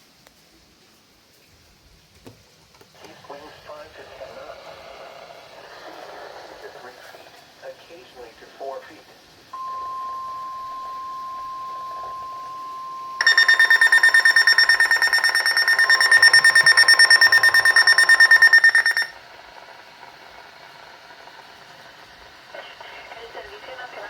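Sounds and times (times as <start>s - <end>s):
faint radio hiss: 0.0s - 24.0s
rapid electronic alert beeping: 9.6s - 19.2s
steady alarm tone: 9.6s - 19.3s.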